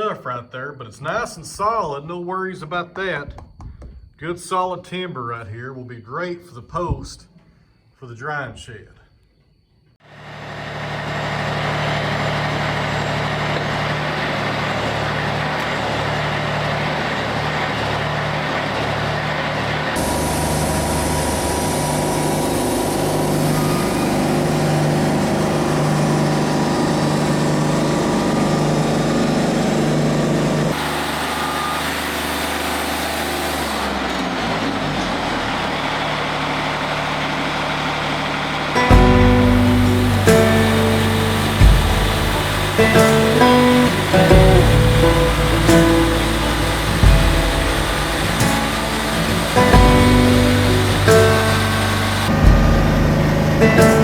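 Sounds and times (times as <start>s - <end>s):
engine hum: 10.0s - 54.0s
band saw blade cutting log: 38.8s - 52.4s.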